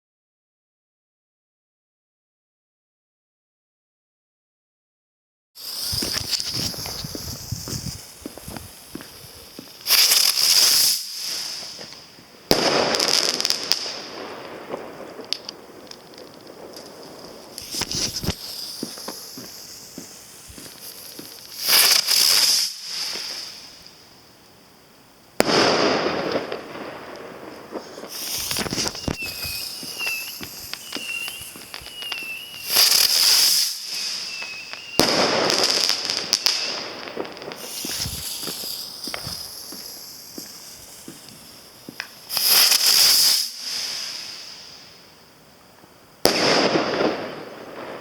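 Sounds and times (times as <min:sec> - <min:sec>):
loud firework blasts: 0:05.6 - 0:24.0, 0:25.4 - 0:45.4, 0:46.1 - 0:48.0
firework crackles: 0:05.6 - 0:48.0
spinner fireworks hissing: 0:05.6 - 0:48.0
warbling whistle tone: 0:28.2 - 0:35.4.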